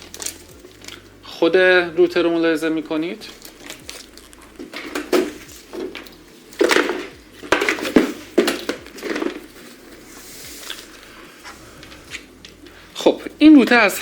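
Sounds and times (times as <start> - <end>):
plastic router being handled: 4.6 - 9.8.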